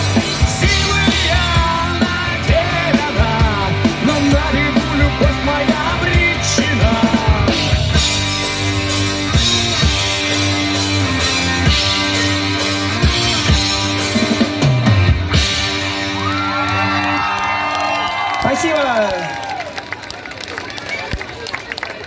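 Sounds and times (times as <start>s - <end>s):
drum kit: 0.0s - 17.1s
electric guitar: 0.0s - 17.6s.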